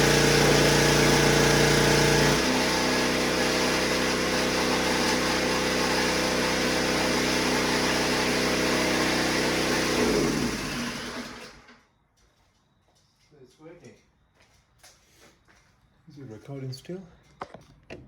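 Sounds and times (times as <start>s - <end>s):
pressure washer motor and pump: 0.0s - 11.8s.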